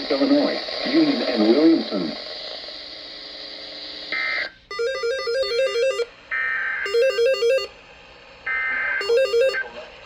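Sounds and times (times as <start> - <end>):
electronic chirp: 6.9 - 7.7, 9.0 - 9.6
buzzy stepping electronic beeps: 9.0 - 9.6.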